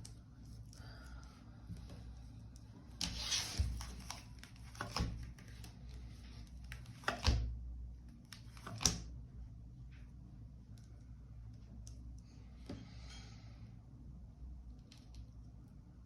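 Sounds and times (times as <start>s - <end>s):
cards rustling and sliding on table: 2.9s - 7.4s.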